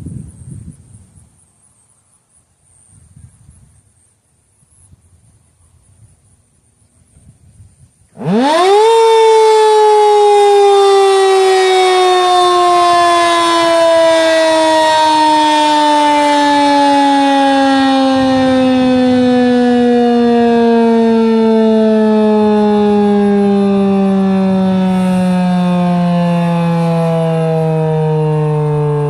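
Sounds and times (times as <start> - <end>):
warning siren wailing: 8.1 - 29.0.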